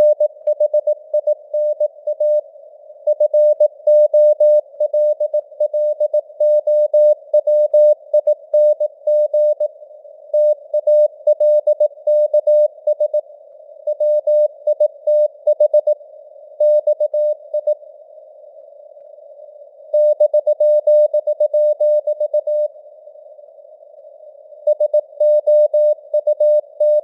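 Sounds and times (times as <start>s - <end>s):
morse code beeps: 16.6s - 17.8s, 20.0s - 22.7s, 24.7s - 27.0s.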